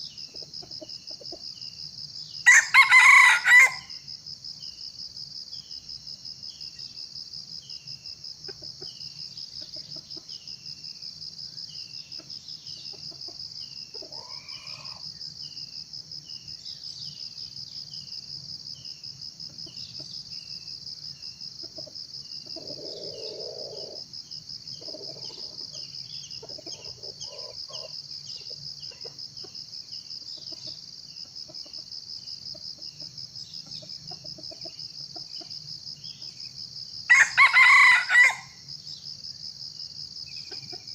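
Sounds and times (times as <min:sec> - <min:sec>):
high insect drone: 0:00.0 - 0:40.9
junglefowl crowing: 0:02.5 - 0:04.0, 0:14.0 - 0:15.0, 0:22.6 - 0:24.0, 0:26.4 - 0:28.0, 0:37.1 - 0:38.6.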